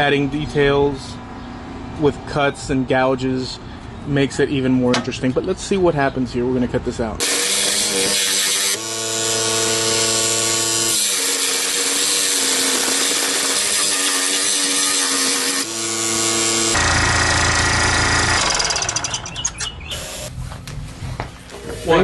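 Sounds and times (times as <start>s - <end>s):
power tool cutting wood: 7.2s - 20.3s.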